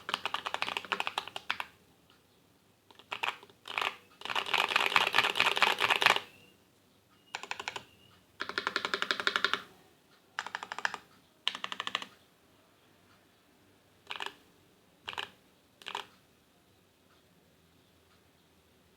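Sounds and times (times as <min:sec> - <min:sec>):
mechanical keyboard typing: 0:00.0 - 0:01.8, 0:02.9 - 0:06.3, 0:07.3 - 0:09.7, 0:10.4 - 0:12.2, 0:14.0 - 0:14.4, 0:15.1 - 0:16.1.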